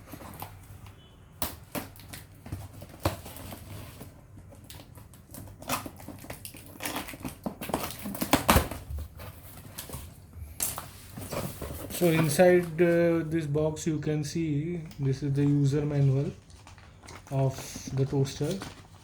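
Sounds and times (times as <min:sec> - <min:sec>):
cardboard box rustling and scraping: 0:02.4 - 0:04.5, 0:05.4 - 0:12.6.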